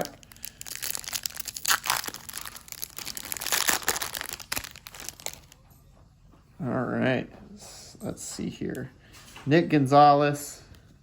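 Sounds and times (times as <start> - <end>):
wrapper crinkling and tearing: 0.0 - 5.6.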